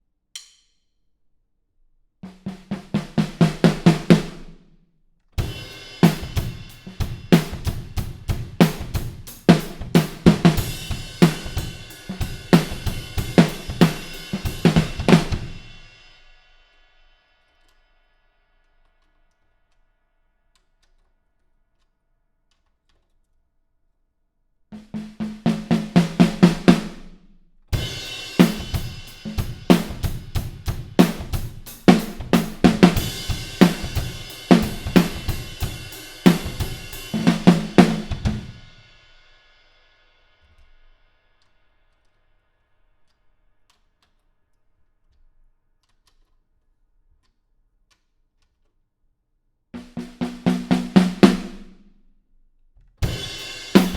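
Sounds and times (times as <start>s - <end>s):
drum-kit groove: 2.2s - 4.6s, 5.4s - 16.4s, 24.8s - 39.3s, 49.8s - 51.8s, 53.0s - 53.9s
snare drum strokes: 5.4s - 15.6s, 27.8s - 38.7s, 49.8s - 51.8s, 53.0s - 53.9s.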